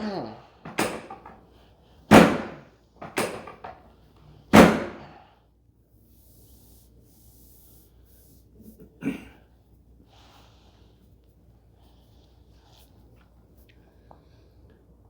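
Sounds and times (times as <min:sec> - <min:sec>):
sharp ringing thuds: 0:02.1 - 0:03.7, 0:04.6 - 0:05.1.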